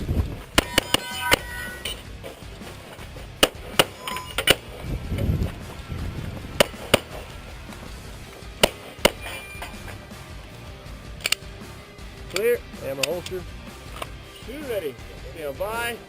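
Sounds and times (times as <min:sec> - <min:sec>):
brief ringing: 0:03.9 - 0:04.4
handgun shots: 0:08.6 - 0:10.0.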